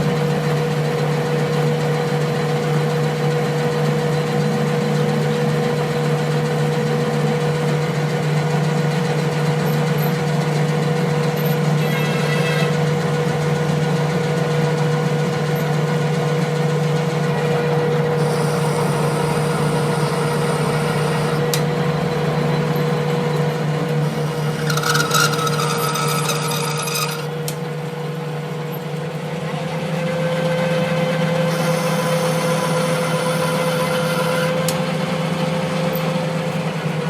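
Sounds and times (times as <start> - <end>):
machine humming: 11.1 - 37.0
metal rasping: 18.1 - 21.7, 22.6 - 27.5.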